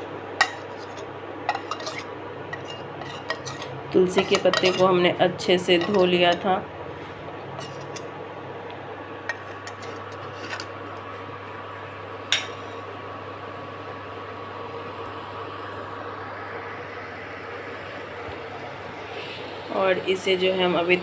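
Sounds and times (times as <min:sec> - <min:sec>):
gas burner hissing: 0:00.0 - 0:11.5, 0:12.2 - 0:21.0
kitchen utensils clinking: 0:01.5 - 0:05.0, 0:05.7 - 0:06.5.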